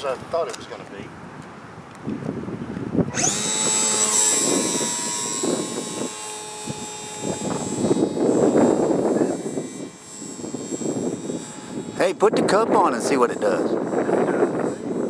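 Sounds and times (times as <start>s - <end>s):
wind noise on microphone: 0.0s - 15.0s
model plane motor whine: 3.0s - 15.0s.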